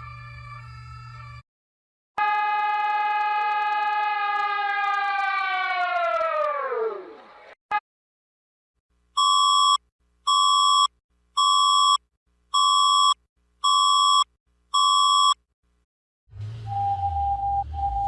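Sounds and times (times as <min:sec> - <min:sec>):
siren winding down: 0:02.2 - 0:07.2, 0:16.3 - 0:18.0
electronic alarm beeps: 0:09.2 - 0:12.0, 0:12.6 - 0:15.4, 0:16.7 - 0:18.0.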